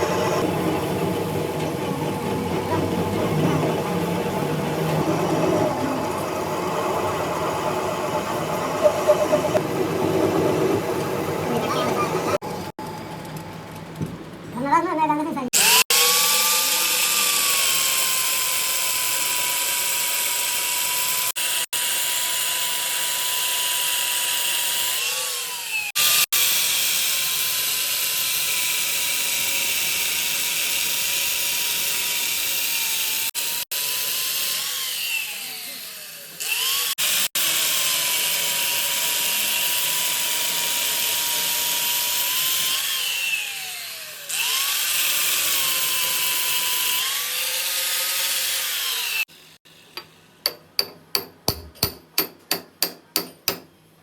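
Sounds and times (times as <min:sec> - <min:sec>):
power tool motor whining: 0:33.0 - 0:49.6.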